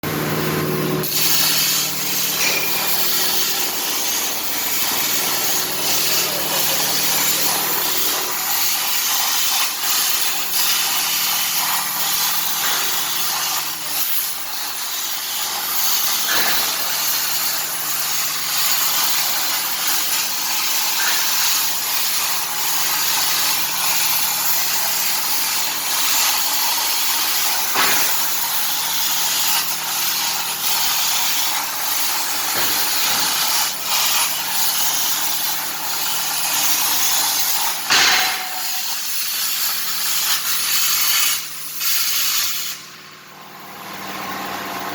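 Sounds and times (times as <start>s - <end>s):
low machine hum: 0.0s - 8.5s
cutting machine hissing: 0.0s - 41.5s.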